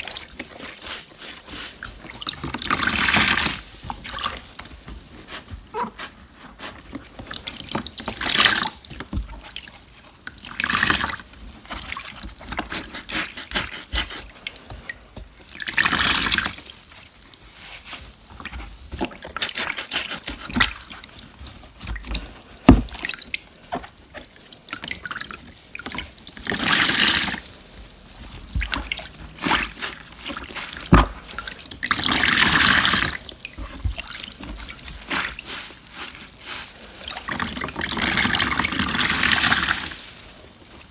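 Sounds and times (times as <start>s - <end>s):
water dripping and splashing: 0.0s - 40.9s
water gushing out: 28.5s - 35.5s.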